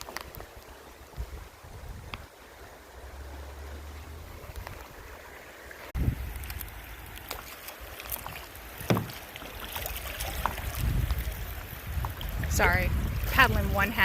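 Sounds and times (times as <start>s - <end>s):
wind rumble on microphone: 0.0s - 7.3s, 9.8s - 14.0s
water drips and splashes: 0.0s - 14.0s
paddle strokes splashing in water: 2.3s - 14.0s
loud knocks: 8.9s - 9.2s.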